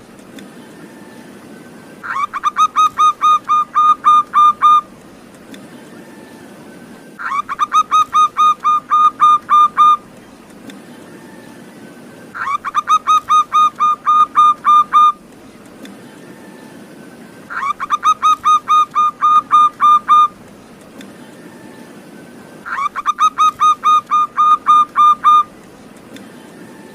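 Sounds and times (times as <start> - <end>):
dove song: 0.0 - 26.9.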